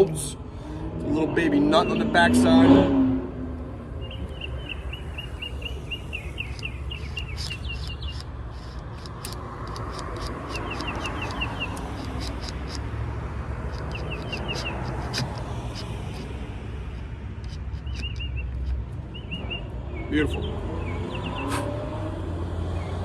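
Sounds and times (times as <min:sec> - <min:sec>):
steady low rumble: 0:03.2 - 0:19.9
faint clicks: 0:03.5 - 0:13.0, 0:13.7 - 0:19.0
bird chirping: 0:03.5 - 0:21.5.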